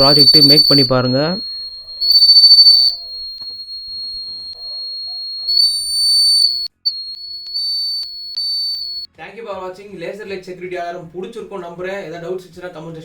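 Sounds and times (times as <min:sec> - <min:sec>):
alarm buzzer high-pitched tone: 0:00.0 - 0:09.1.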